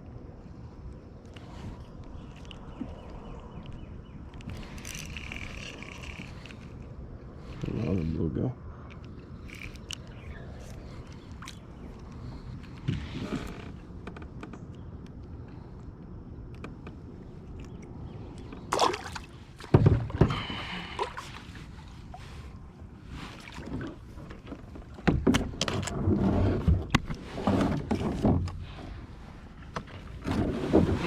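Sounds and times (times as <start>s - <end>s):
water: 0.0s - 31.0s
wind: 0.0s - 31.0s
knocks and rustling against hull: 10.6s - 15.0s, 18.4s - 31.0s.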